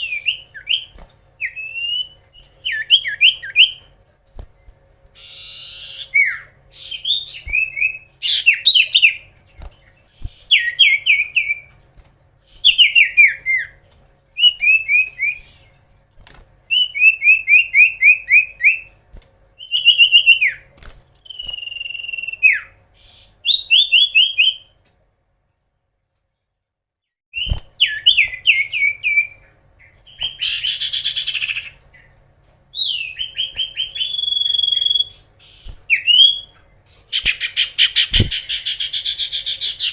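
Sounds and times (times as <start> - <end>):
bird whistling song: 0.0 - 3.9, 5.2 - 9.3, 10.2 - 11.7, 12.6 - 13.8, 14.4 - 15.7, 16.7 - 18.9, 19.6 - 24.8, 27.4 - 32.1, 32.7 - 39.9.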